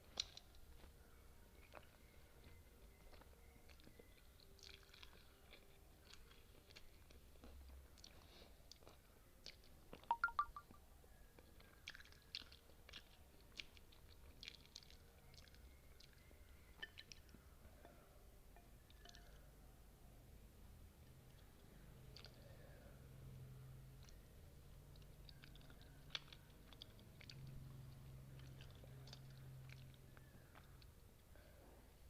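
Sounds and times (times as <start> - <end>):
close-miked chewing: 0.0 - 10.1, 11.3 - 18.1, 18.8 - 19.5, 21.1 - 31.4
wet mouth clicks: 9.5 - 10.7.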